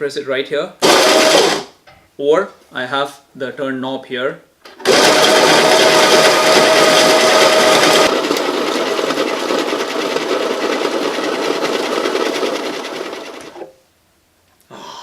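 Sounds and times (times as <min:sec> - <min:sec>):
coffee grinder grinding beans: 0:00.8 - 0:01.7, 0:04.8 - 0:13.7.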